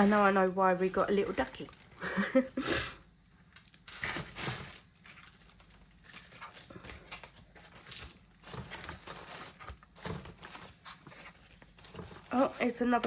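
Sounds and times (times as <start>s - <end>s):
paper and card rustling: 0.0s - 2.1s, 3.8s - 13.0s.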